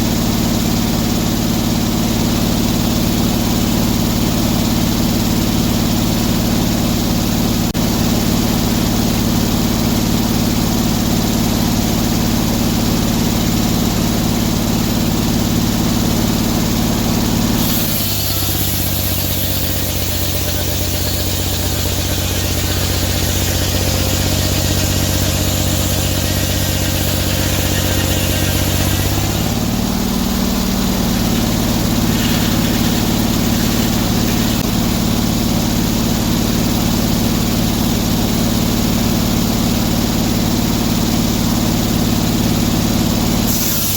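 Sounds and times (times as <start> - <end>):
sawmill engine running: 0.0 - 43.9
hiss: 17.6 - 29.6, 30.6 - 34.6, 43.4 - 43.9.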